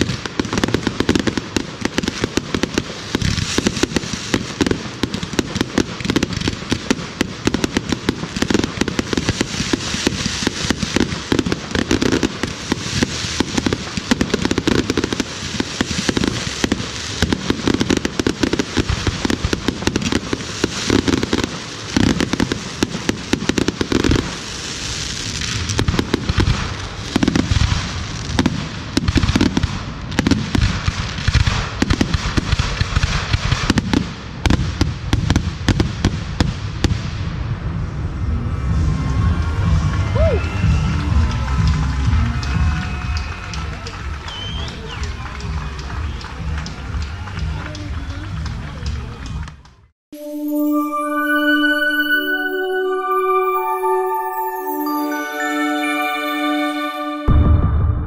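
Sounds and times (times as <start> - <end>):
fireworks shells bursting: 0.0 - 34.0
fireworks crackle: 0.0 - 52.1, 52.8 - 58.0.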